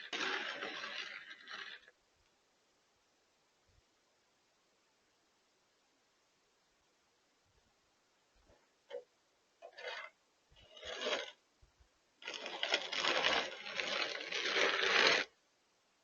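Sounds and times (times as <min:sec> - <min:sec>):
metal snow shovel scraping snow: 0:00.0 - 0:01.9, 0:09.6 - 0:11.4, 0:12.2 - 0:15.3.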